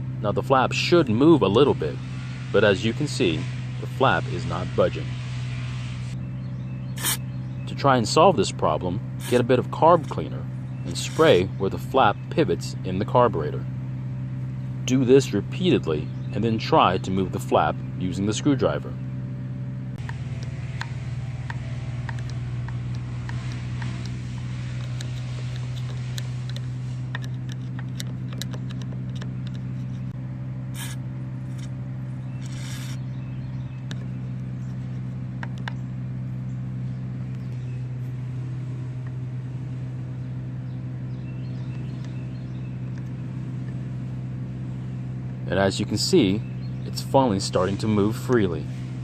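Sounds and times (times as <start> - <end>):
low drone: 0.0 - 12.4
aerosol spray hissing: 7.0 - 7.2, 30.8 - 31.0.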